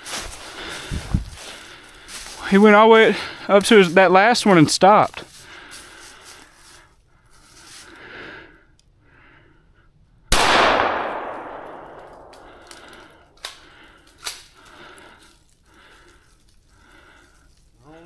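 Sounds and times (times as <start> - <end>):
gunshot echoing: 10.3 - 13.3.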